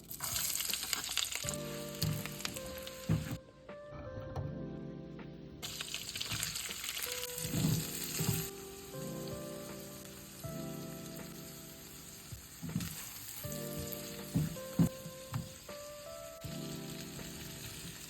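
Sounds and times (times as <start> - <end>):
food sizzling in a pan: 0.0 - 3.4, 5.6 - 18.0
utensil knocking: 1.9 - 3.4, 7.4 - 8.6, 13.7 - 15.7.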